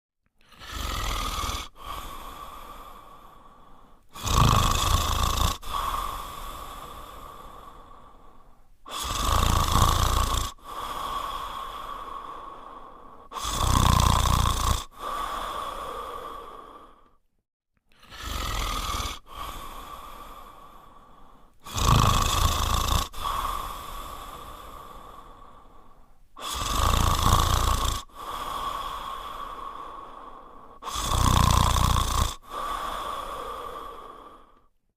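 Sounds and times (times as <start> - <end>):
dog snoring with whistling note: 0.5 - 2.2, 4.1 - 6.4, 8.9 - 10.8, 13.3 - 15.0, 18.0 - 19.6, 21.6 - 23.9, 26.4 - 28.2, 30.8 - 32.6.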